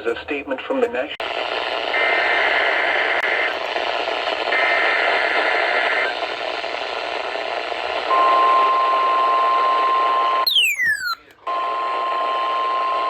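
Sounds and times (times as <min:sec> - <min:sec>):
steady alarm tone: 0:10.5 - 0:11.2.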